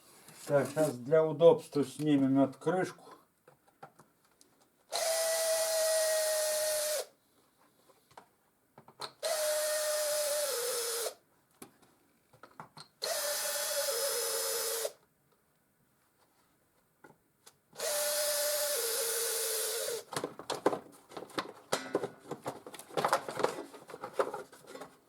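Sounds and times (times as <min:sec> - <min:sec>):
cordless drill whining: 0:04.9 - 0:07.1, 0:09.2 - 0:11.2, 0:13.0 - 0:15.0, 0:17.8 - 0:20.1.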